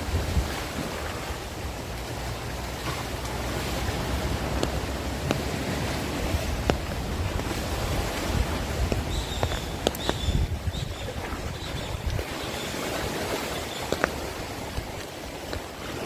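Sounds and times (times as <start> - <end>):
heavy rain: 0.0 - 16.0
wind buffeting microphone: 0.0 - 16.0
sharp taps: 8.8 - 10.3.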